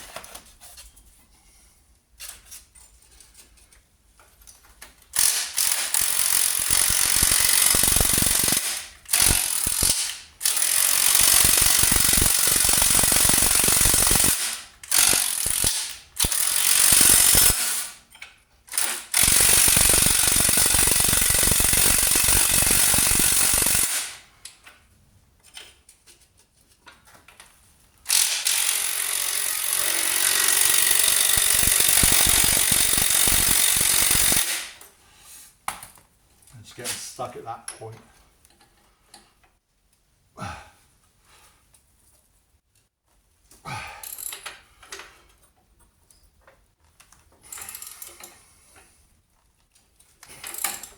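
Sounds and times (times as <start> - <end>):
impact driver hammering: 5.2 - 18.0, 28.1 - 34.7.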